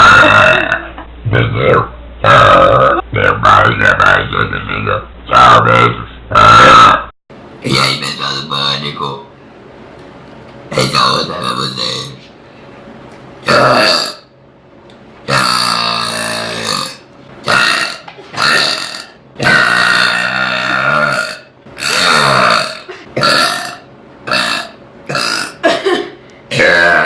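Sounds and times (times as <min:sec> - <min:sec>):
girl burping: 0:00.0 - 0:01.0, 0:17.6 - 0:27.0.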